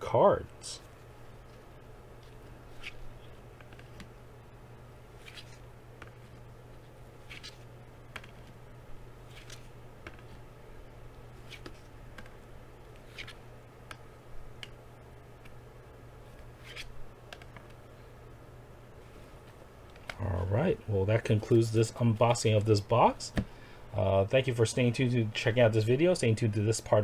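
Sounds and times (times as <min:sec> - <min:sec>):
cards swishing against each other: 0:02.2 - 0:04.2, 0:05.1 - 0:14.8, 0:16.2 - 0:17.8.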